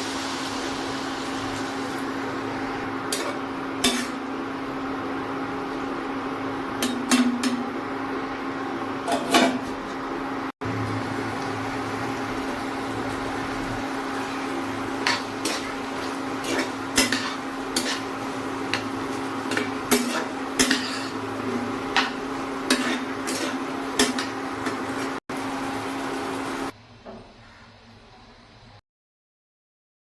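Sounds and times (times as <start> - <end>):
metal utensil scraping a pan: 3.1 - 4.2, 15.0 - 25.2.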